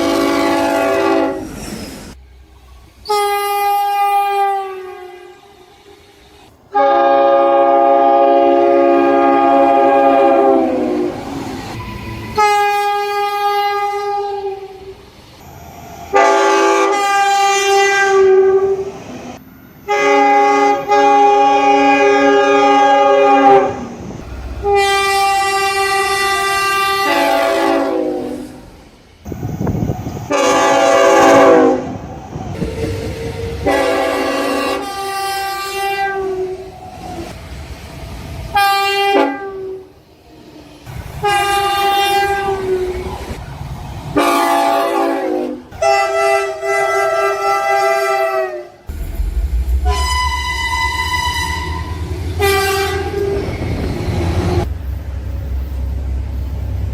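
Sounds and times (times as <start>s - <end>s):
train air horns: 0.0s - 2.2s, 3.0s - 14.9s, 16.1s - 18.9s, 19.8s - 24.0s, 24.6s - 28.7s, 30.3s - 32.0s, 32.6s - 37.4s, 38.5s - 40.0s, 41.2s - 43.1s, 44.2s - 49.0s, 49.6s - 53.5s
low engine rumble: 48.9s - 52.5s.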